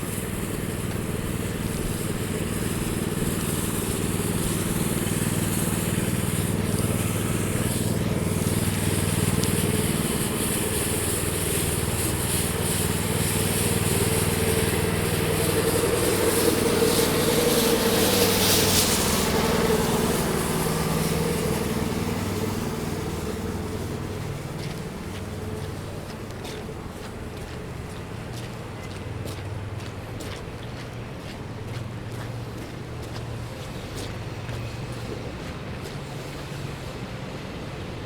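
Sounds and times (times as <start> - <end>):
loud hissing rush: 0.0 - 27.0
motor engine droning hum: 0.0 - 38.0.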